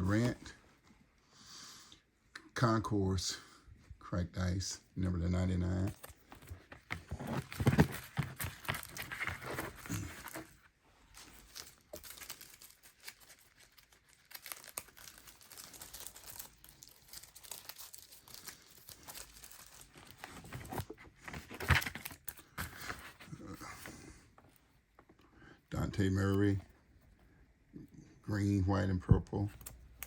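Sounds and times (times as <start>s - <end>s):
plastic crinkling: 6.0s - 22.6s.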